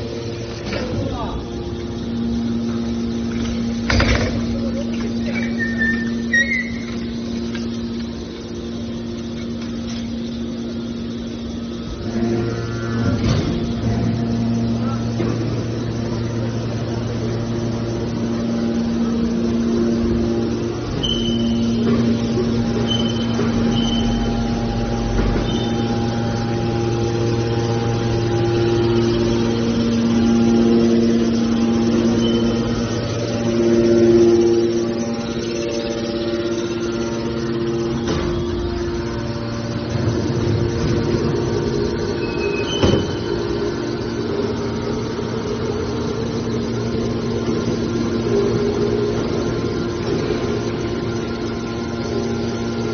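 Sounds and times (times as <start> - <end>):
hydraulic power unit humming: 0.0 - 52.9
high squeak: 5.2 - 7.2, 21.0 - 21.8, 42.2 - 43.5.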